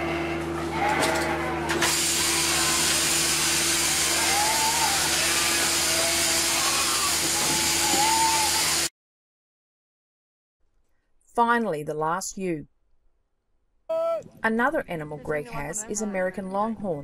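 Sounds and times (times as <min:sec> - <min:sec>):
electric shearing machine humming: 0:00.8 - 0:08.9
shearing cutter hissing through fleece: 0:01.8 - 0:08.9.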